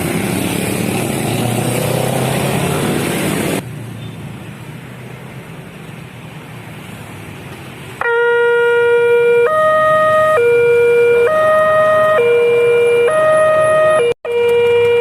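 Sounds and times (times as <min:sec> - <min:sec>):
road traffic noise: 0:00.0 - 0:15.0
level crossing two-tone alarm: 0:08.1 - 0:15.0.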